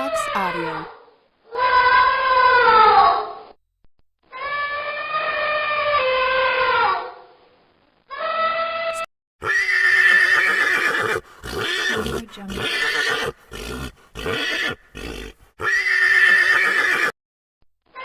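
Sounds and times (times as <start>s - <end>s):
horse neighing: 9.4s - 17.2s.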